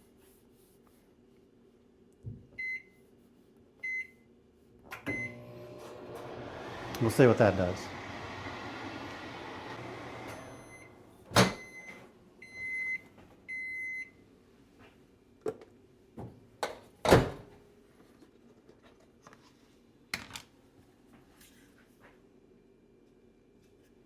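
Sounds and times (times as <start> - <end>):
microwave long beeps: 2.6 - 3.0, 5.0 - 6.2, 8.9 - 14.2
microwave oven humming: 4.9 - 13.6.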